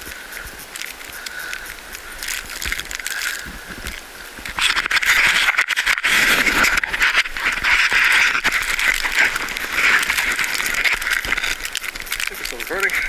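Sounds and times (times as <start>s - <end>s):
fabric rubbing on microphone: 3.3s - 13.0s.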